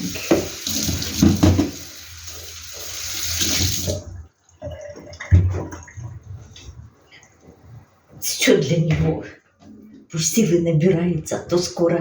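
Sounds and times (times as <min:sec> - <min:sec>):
tap running into sink: 0:00.0 - 0:04.0.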